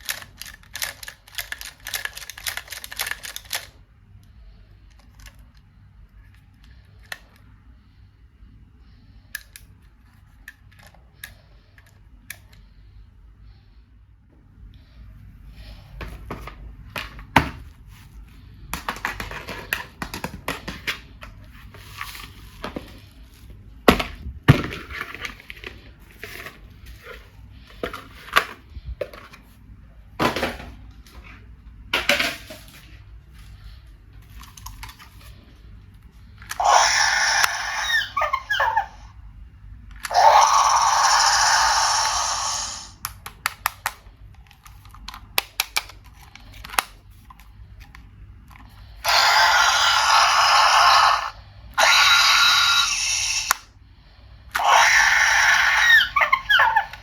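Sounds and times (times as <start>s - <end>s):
plastic toys and packaging handled: 0.0s - 13.1s, 14.9s - 57.0s.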